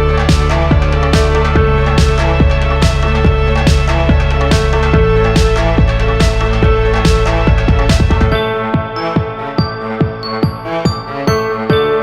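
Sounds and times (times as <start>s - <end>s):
electronic music with bass beat: 0.0s - 12.0s.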